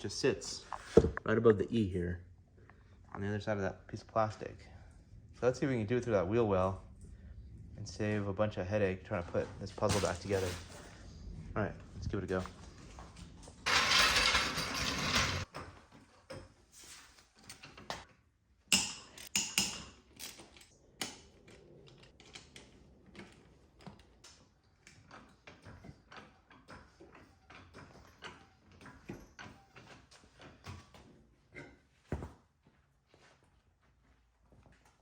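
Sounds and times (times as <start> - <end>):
scraping rustle of plastic panels: 9.1 - 11.6, 12.2 - 18.1.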